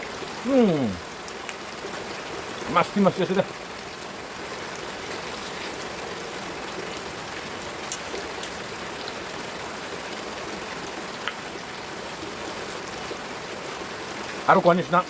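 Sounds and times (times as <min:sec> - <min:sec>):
steady rain hiss: 0:00.0 - 0:15.0.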